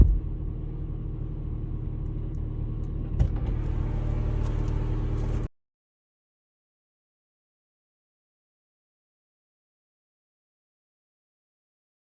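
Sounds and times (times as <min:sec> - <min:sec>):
car engine rumbling: 0:00.0 - 0:05.5.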